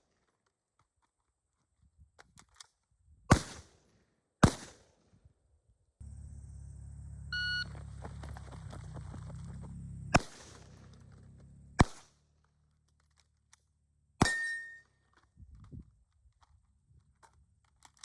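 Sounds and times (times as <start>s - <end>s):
gunshots: 3.3s - 3.7s, 4.4s - 4.8s, 10.1s - 12.2s
low steady rumble: 6.0s - 12.8s
shot timer beep: 7.3s - 7.7s.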